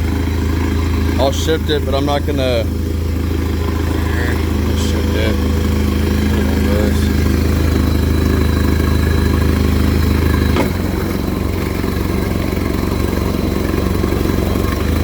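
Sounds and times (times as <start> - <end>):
outboard engine idling: 0.0 - 15.0
gear shift clunk: 10.0 - 11.7.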